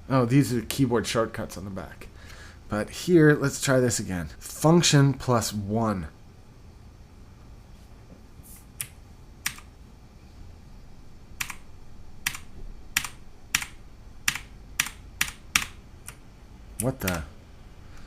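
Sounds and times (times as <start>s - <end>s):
clicky mechanical keyboard keys: 11.4s - 11.6s, 12.2s - 12.4s, 13.0s - 16.2s, 16.8s - 17.2s.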